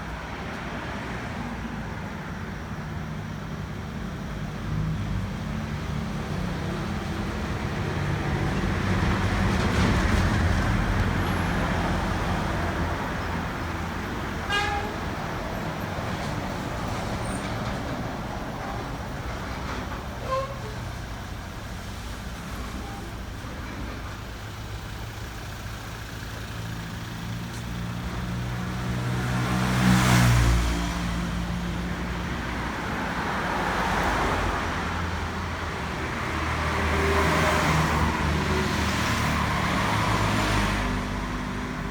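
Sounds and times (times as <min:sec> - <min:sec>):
vehicle engines running: 0:00.0 - 0:41.9
vehicles passing: 0:00.0 - 0:41.9.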